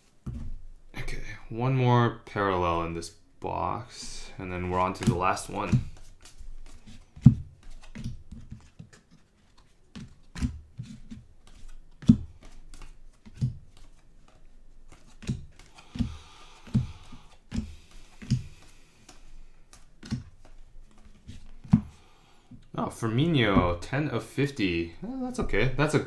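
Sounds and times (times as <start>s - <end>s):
cards tapping and clicking on table: 11.5s - 22.0s.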